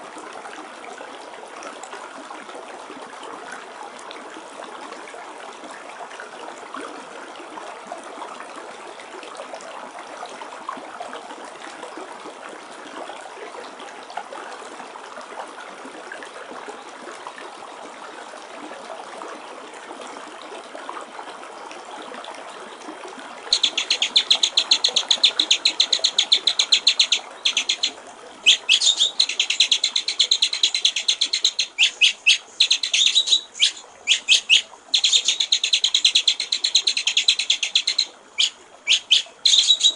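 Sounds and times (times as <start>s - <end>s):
trickling water: 0.0s - 39.9s
bird singing rattling trill: 23.5s - 39.9s.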